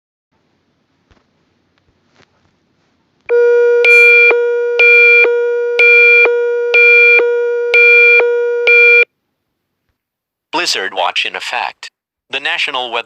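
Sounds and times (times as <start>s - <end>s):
steady low alert tone: 3.3s - 9.1s
high electronic beeps: 3.8s - 5.2s.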